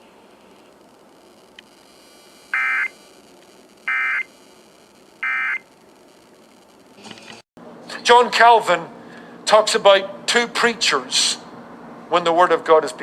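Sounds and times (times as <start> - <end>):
buzzing digital data tones: 0.8 - 7.0.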